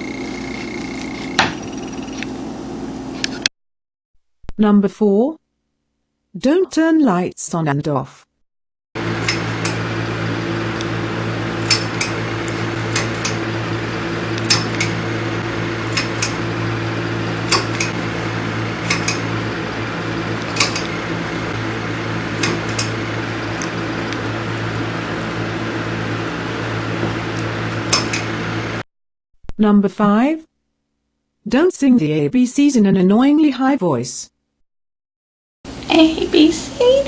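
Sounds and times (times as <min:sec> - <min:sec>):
low electrical hum: 0:09.0 - 0:28.8
light switch clicking: 0:17.4 - 0:18.0, 0:18.8 - 0:19.4, 0:27.3 - 0:28.3.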